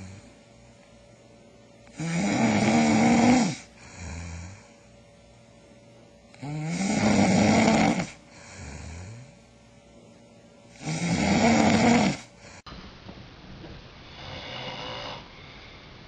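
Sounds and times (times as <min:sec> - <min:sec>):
person snoring: 0:00.0 - 0:00.4, 0:01.8 - 0:04.8, 0:06.3 - 0:09.5, 0:10.7 - 0:12.6, 0:14.1 - 0:15.6.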